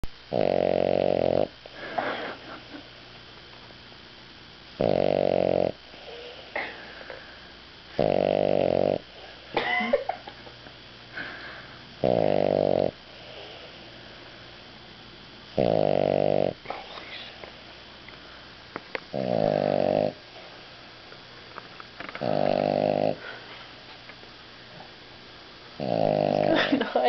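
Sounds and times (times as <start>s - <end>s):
dog snoring: 0.3s - 2.3s, 4.8s - 6.6s, 7.9s - 9.2s, 12.0s - 13.8s, 15.5s - 17.3s, 19.1s - 20.2s, 22.1s - 23.3s, 25.8s - 26.7s.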